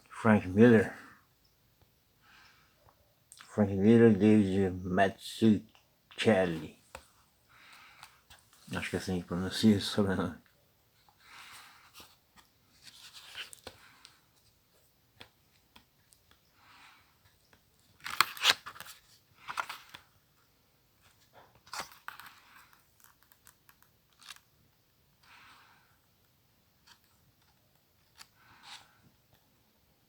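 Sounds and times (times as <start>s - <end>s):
paper rustling and tearing: 18.0s - 20.0s.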